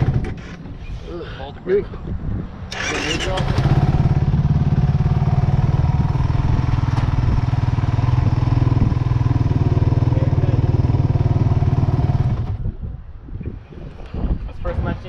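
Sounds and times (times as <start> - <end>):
atv engine idling: 2.8 - 12.6.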